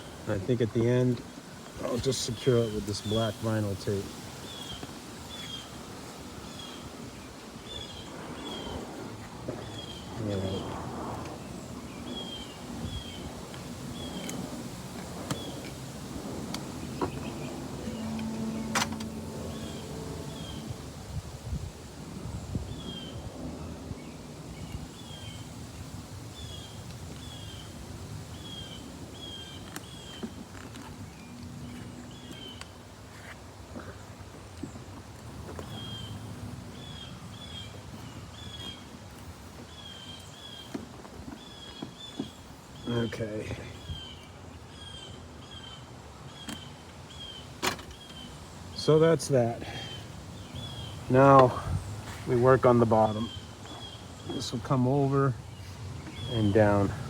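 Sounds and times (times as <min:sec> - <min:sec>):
outdoor background noise: 0:00.0 - 0:57.0
low background rumble: 0:16.1 - 0:21.3
bird chirping: 0:16.8 - 0:21.2.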